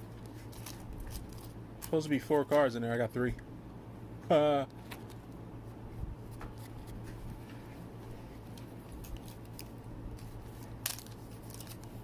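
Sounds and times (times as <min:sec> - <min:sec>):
steady low hum: 0:00.0 - 0:12.0
trading cards clicking and rustling: 0:00.2 - 0:02.7, 0:08.4 - 0:12.0.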